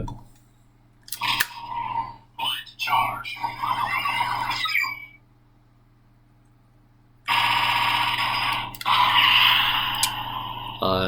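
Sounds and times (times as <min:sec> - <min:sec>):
warbling alarm-like tone: 0:03.2 - 0:05.2, 0:07.3 - 0:11.0.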